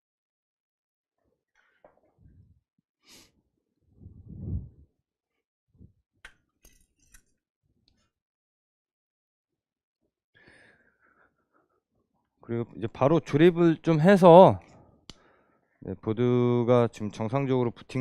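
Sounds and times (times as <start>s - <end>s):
tools clinking and clicking: 6.6s - 7.3s.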